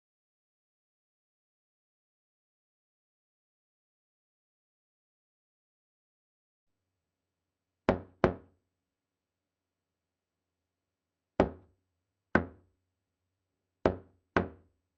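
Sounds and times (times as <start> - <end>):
knocking on a door: 7.9 - 8.5, 11.4 - 11.7, 12.4 - 12.6, 13.8 - 14.7.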